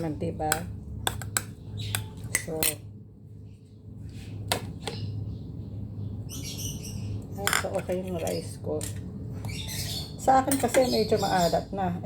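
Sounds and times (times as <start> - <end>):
steady low hum: 0.0 - 12.0
utensils clinking against dishes: 10.3 - 11.2.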